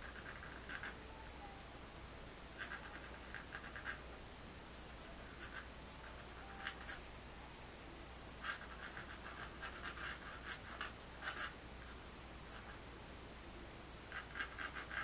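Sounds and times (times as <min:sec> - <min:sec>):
pencil scratching on canvas: 0:00.0 - 0:01.0, 0:02.6 - 0:04.0, 0:05.2 - 0:07.0, 0:08.4 - 0:12.8, 0:14.1 - 0:15.0.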